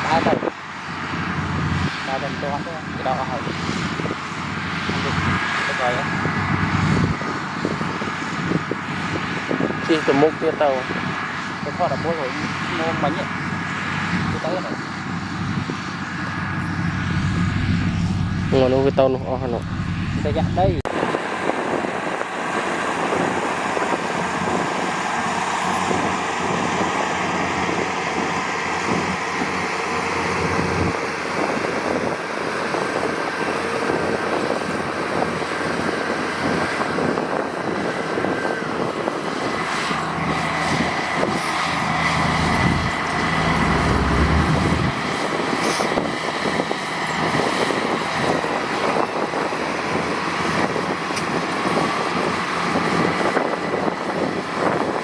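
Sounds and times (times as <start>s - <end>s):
heavy machinery diesel engines: 0.0s - 55.0s
deep engine rumble: 12.5s - 54.9s
steady whine: 14.3s - 34.9s, 37.9s - 51.4s.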